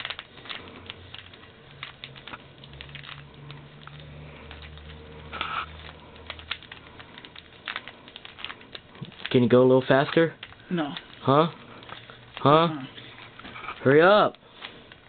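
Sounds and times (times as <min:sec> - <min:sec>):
plastic puzzle cube clicking: 0:00.0 - 0:09.4.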